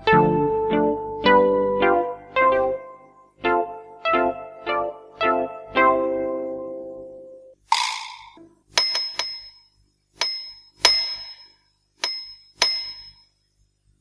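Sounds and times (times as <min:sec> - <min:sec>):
small high-pitched bell ringing: 0:08.8 - 0:13.4.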